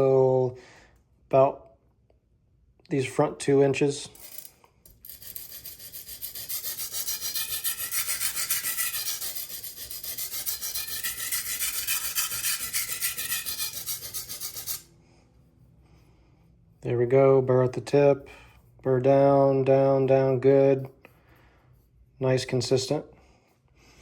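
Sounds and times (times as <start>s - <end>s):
knife scraping on sharpening stone: 4.2s - 14.8s.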